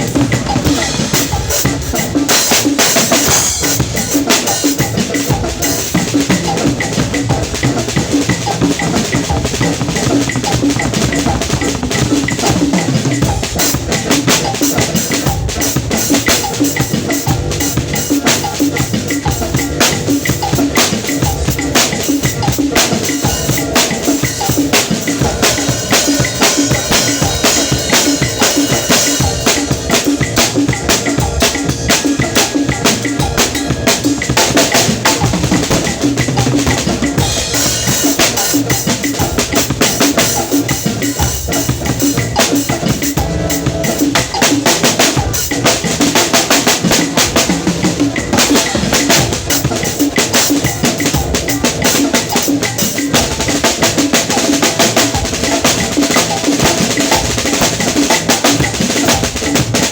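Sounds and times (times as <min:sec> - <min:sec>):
drum kit playing fast: 0:00.0 - 0:59.9.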